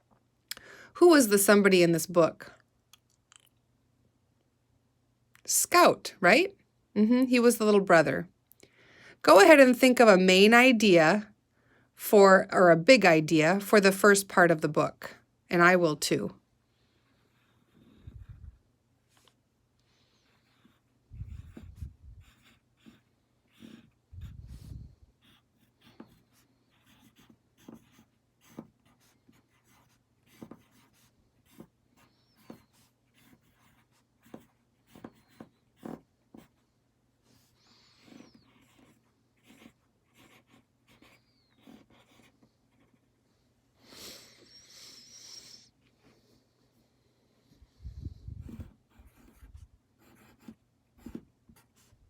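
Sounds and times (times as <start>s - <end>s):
pen scratching on paper: 20.2s - 36.7s, 37.3s - 43.1s, 48.4s - 52.0s.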